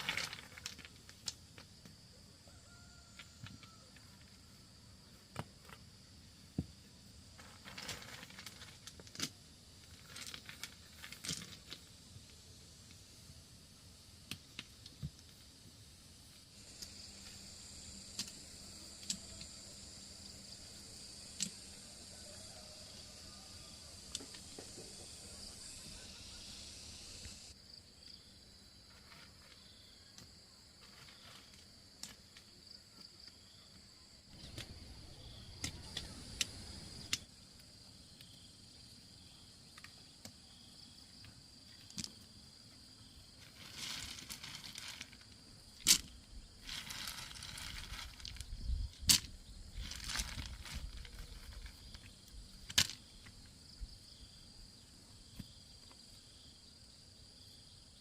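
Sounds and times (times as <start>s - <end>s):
rustling and handling noise: 0.0s - 1.8s, 5.1s - 13.0s, 28.8s - 33.2s, 43.2s - 53.4s
crickets droning: 0.0s - 58.0s.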